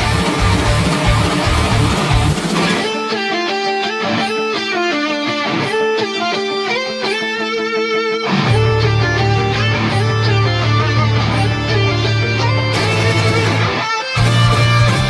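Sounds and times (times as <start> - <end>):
heavy band backing: 0.0 - 4.8, 8.3 - 15.0
guitar melody: 0.0 - 15.0.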